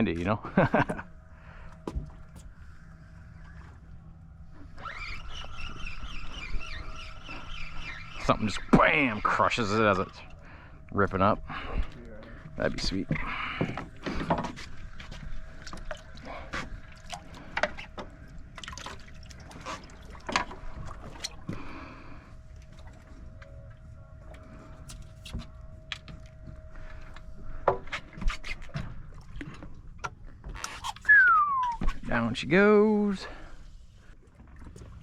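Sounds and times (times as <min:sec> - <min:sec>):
faint steady tone: 0:05.4 - 0:30.4.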